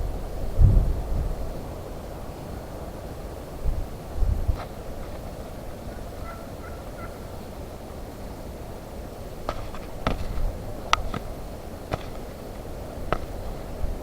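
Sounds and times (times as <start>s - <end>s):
turkey calling: 5.8s - 7.6s.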